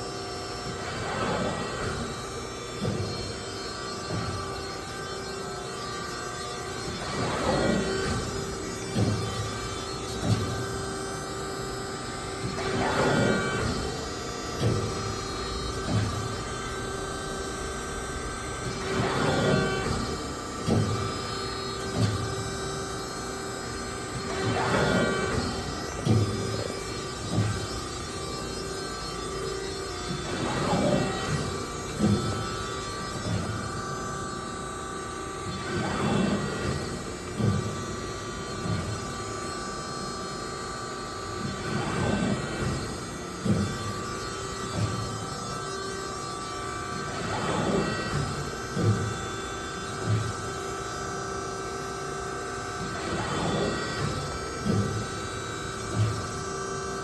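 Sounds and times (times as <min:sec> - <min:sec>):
hydraulic power unit hum: 0:00.0 - 0:57.0
mechanical noise: 0:00.0 - 0:57.0
sharp machine clunks: 0:00.7 - 0:06.1, 0:24.1 - 0:33.8, 0:35.5 - 0:37.8.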